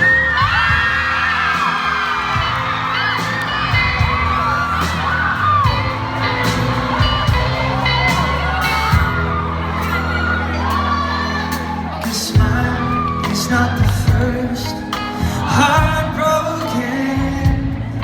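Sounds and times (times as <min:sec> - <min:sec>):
audience whooping and screaming: 0:00.0 - 0:18.0
live band playing: 0:00.0 - 0:18.0.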